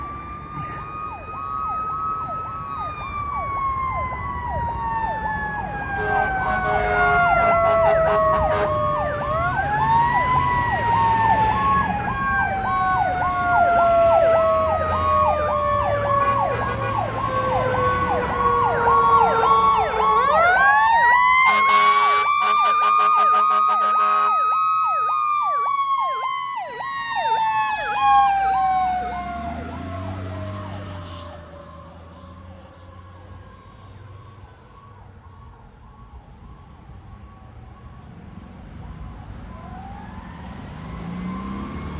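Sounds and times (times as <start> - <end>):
electronic siren fast tone: 5.7 - 35.7
air horn blasts: 6.0 - 9.0, 16.1 - 17.3, 21.5 - 24.4.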